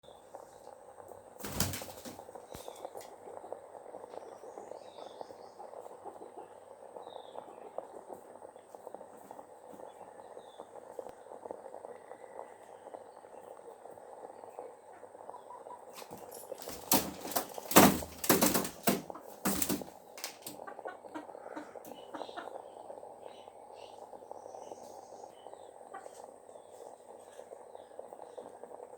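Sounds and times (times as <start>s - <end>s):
chickens rustling: 0.1s - 28.9s
wing flap: 1.4s - 2.8s, 16.0s - 20.6s.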